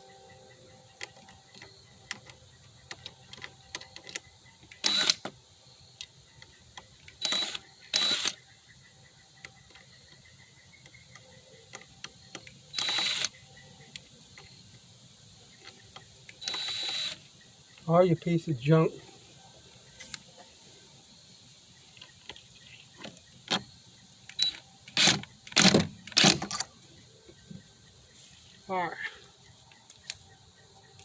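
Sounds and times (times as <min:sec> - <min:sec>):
small motor whirring: 0:04.8 - 0:05.2, 0:07.2 - 0:08.4, 0:12.7 - 0:13.4, 0:16.4 - 0:17.2.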